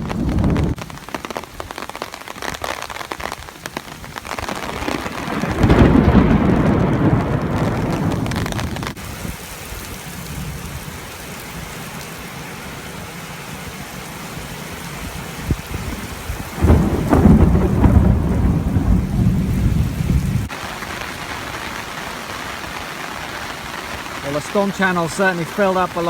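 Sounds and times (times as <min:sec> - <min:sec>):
heavy rain falling: 0:00.0 - 0:26.0
rolling thunder rumble: 0:04.5 - 0:09.0, 0:15.4 - 0:20.6
sharp thunder crack: 0:04.5 - 0:09.0, 0:16.6 - 0:20.6.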